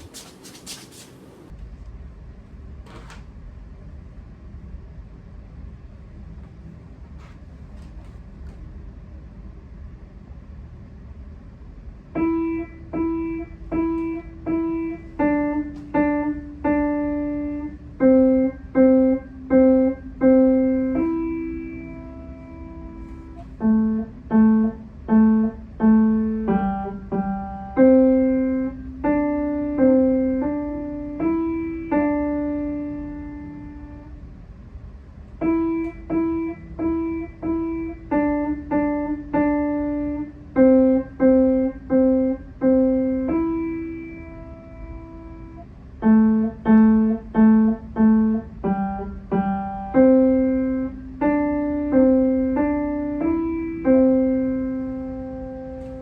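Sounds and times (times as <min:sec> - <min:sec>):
slow piano melody: 0:12.1 - 0:34.2, 0:35.3 - 0:56.0.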